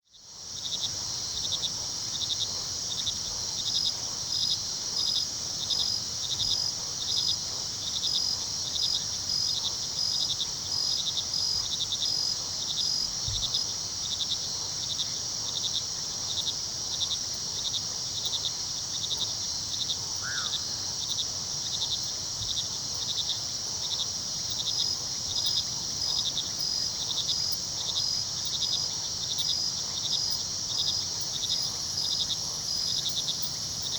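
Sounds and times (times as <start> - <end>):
crickets trilling: 0.1 - 33.9
insect fast pulsing: 14.1 - 33.9.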